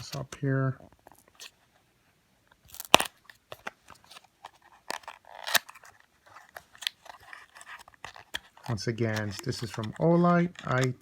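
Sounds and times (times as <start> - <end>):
cardboard packaging crackling: 2.6 - 11.0
packaging rustle: 2.7 - 11.0.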